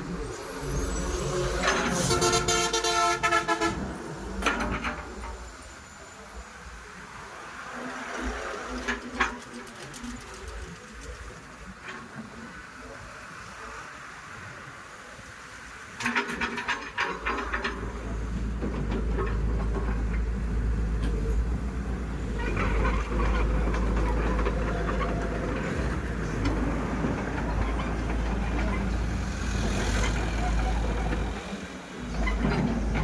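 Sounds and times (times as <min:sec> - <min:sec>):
excavator diesel engine rumbling: 0:00.0 - 0:13.8, 0:14.8 - 0:33.0
machinery clattering: 0:22.1 - 0:33.0.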